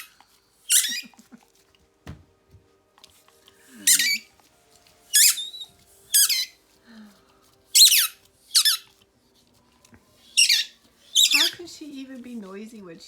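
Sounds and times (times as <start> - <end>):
dog whining high squeaks: 0.7 - 1.1, 3.8 - 4.3, 5.1 - 6.6, 7.7 - 8.9, 10.3 - 11.6.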